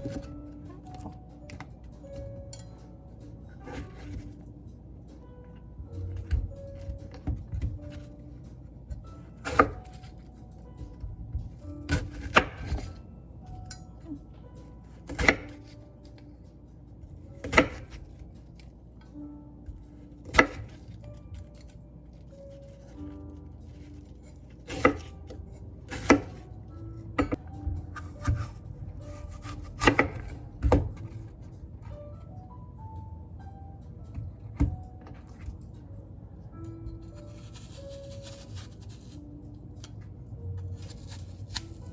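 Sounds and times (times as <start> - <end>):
quiet background music: 0.0 - 41.9
knife chopping on cutting board: 9.4 - 10.1, 10.9 - 13.0, 15.0 - 15.8, 17.4 - 18.2, 20.2 - 20.9, 24.1 - 26.4, 27.2 - 31.3, 37.0 - 39.1.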